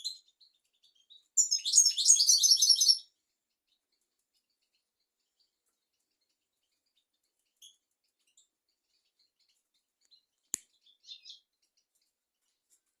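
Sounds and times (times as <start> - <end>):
goldfinch twittering: 1.0 - 3.0.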